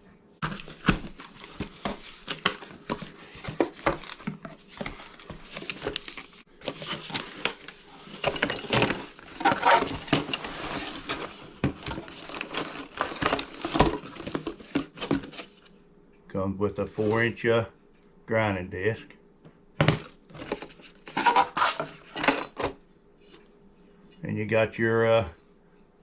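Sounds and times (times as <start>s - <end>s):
small knocks and clatters: 0.4s - 15.6s
packaging crinkling and rustling: 0.4s - 15.7s.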